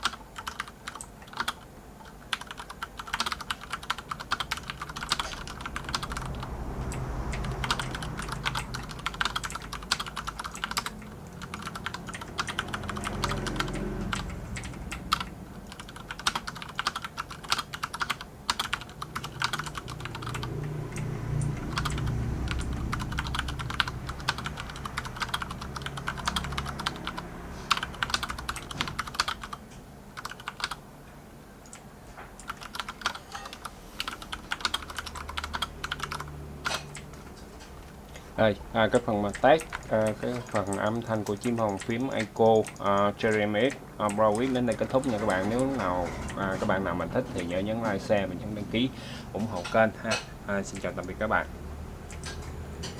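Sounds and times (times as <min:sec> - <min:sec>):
fast typing on mechanical keyboard: 0:00.0 - 0:30.8, 0:32.4 - 0:37.2, 0:38.4 - 0:48.1.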